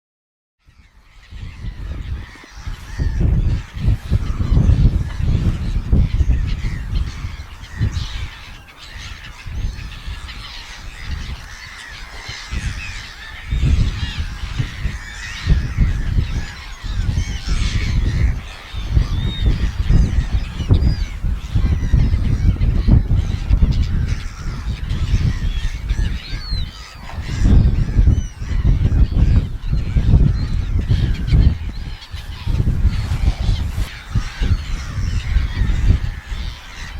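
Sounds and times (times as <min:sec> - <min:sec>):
wind on microphone: 0:00.6 - 0:36.9
seagulls calling: 0:00.7 - 0:36.9.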